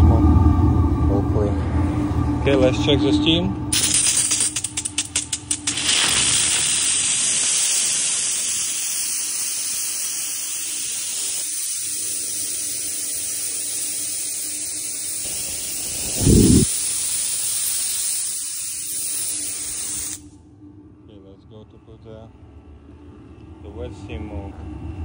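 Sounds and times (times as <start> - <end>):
steam hissing from spray gun: 5.6 - 20.2.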